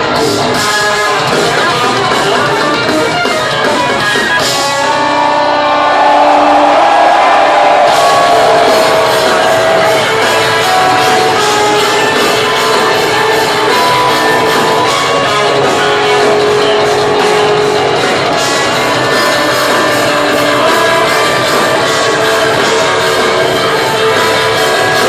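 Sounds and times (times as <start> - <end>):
drums: 0.0 - 25.0
electric guitars playing riff: 0.0 - 25.0.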